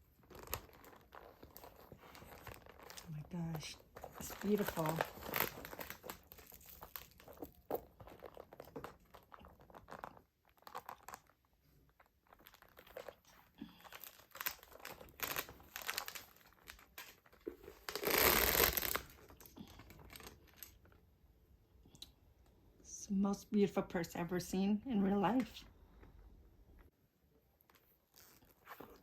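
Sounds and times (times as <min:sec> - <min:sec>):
packaging rustling and crinkling: 0:00.0 - 0:21.0.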